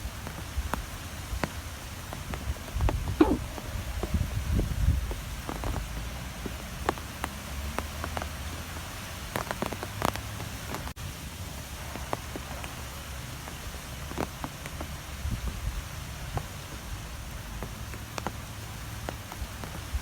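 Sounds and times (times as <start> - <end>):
small sharp ticks and taps: 5.0 - 10.9, 16.3 - 20.0.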